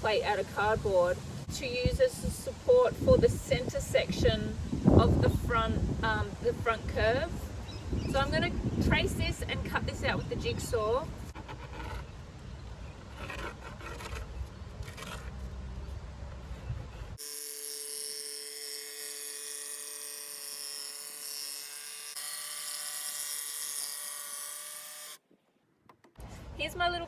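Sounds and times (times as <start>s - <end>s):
electric jigsaw whining: 17.2s - 25.2s.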